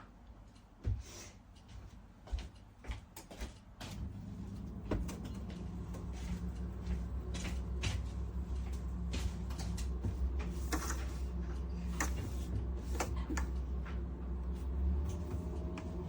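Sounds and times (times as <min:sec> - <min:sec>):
espresso machine humming: 0:04.0 - 0:16.0.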